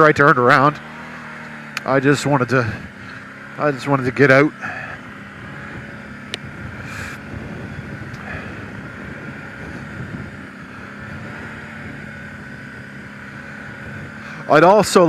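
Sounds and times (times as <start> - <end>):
quad bike engine idling: 0.0 - 15.0
wind noise on microphone: 5.4 - 12.8.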